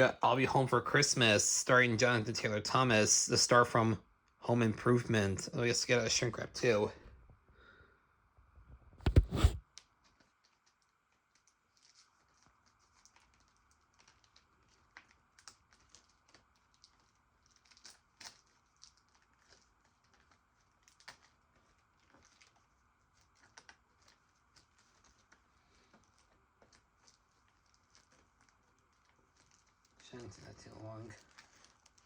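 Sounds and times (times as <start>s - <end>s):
shrink wrap crinkling: 9.8s - 32.0s.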